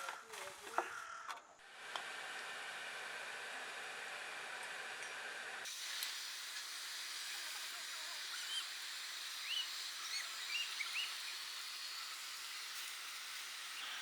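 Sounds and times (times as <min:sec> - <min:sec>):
steady hiss: 0:05.5 - 0:14.0
bird chirps: 0:08.3 - 0:08.8, 0:09.4 - 0:12.2.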